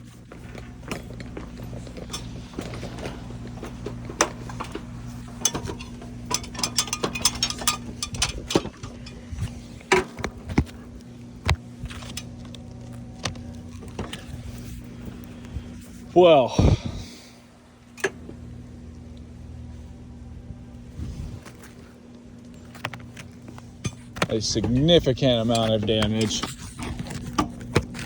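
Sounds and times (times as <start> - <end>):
low hum: 0.0 - 28.0
tools clicking and tapping: 5.4 - 10.7.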